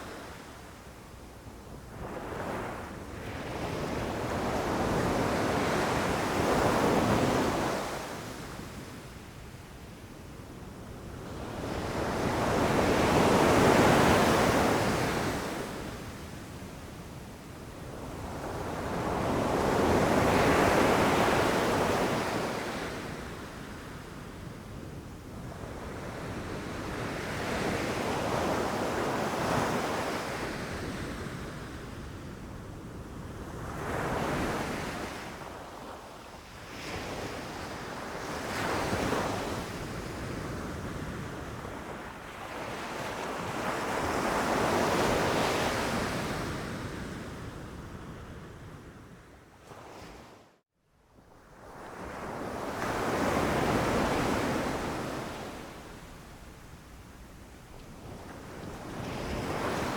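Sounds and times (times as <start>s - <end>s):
ocean waves breaking on shore: 51.6s - 59.9s.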